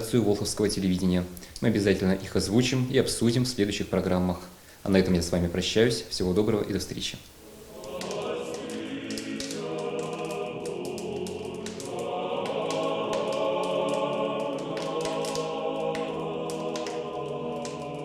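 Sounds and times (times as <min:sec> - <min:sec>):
choir singing sustained chords: 0:07.4 - 0:18.0.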